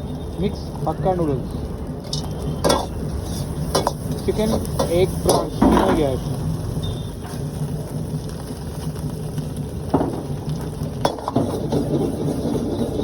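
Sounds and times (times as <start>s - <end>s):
noodles sizzling in a wok: 0.0s - 13.0s
metal spatula scraping: 2.1s - 6.2s, 11.0s - 13.0s.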